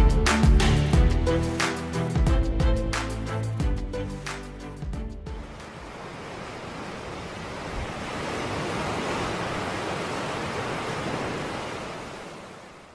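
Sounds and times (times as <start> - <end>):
sea surf washing in: 5.4 - 12.9.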